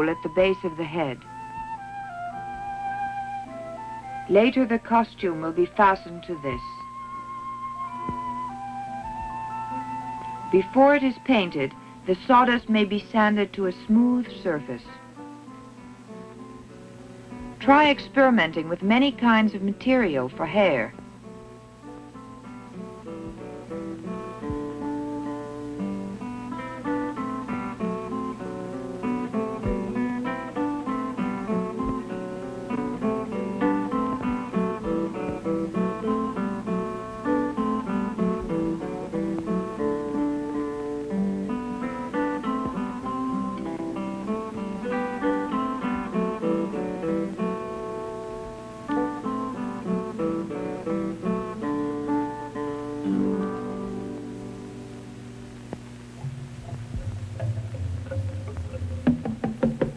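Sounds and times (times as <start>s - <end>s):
acoustic guitar plucked notes: 0.0s - 59.9s
steady low hum: 4.3s - 59.9s.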